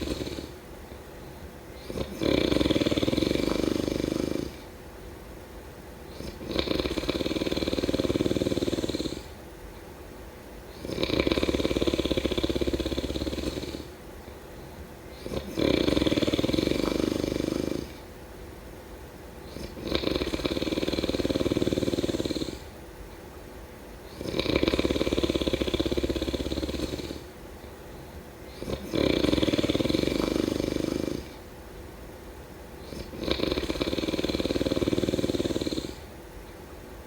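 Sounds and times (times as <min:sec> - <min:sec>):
person snoring: 0:00.0 - 0:00.6, 0:01.8 - 0:04.7, 0:06.1 - 0:09.4, 0:10.7 - 0:14.0, 0:15.1 - 0:18.1, 0:19.5 - 0:22.8, 0:24.1 - 0:27.3, 0:28.5 - 0:31.4, 0:32.8 - 0:36.1
quiet breathing: 0:00.0 - 0:05.0, 0:06.0 - 0:10.0, 0:10.6 - 0:18.5, 0:19.3 - 0:23.2, 0:24.0 - 0:36.7.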